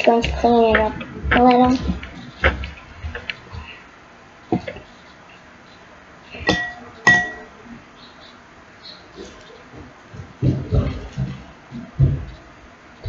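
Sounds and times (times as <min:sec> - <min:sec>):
sharp ringing clinks: 0:06.5 - 0:07.5.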